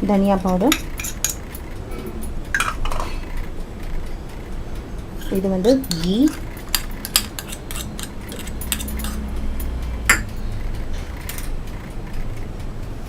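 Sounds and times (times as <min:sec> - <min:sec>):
low steady hum: 0:00.0 - 0:13.0
spoon clinking against bowl: 0:00.4 - 0:01.6, 0:05.2 - 0:10.3.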